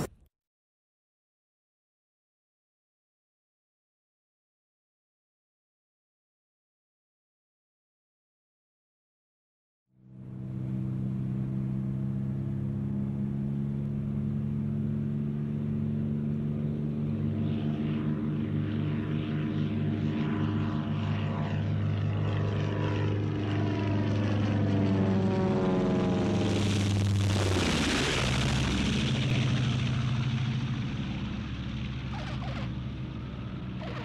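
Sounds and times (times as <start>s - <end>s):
propeller aircraft engine droning: 0.0s - 0.2s, 10.0s - 34.0s.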